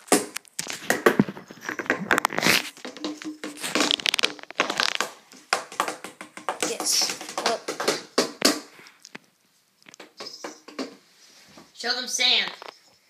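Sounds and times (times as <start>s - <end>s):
rustling and crinkling handling: 0.0s - 7.4s
objects clicking and knocking: 0.0s - 9.2s, 9.8s - 11.0s.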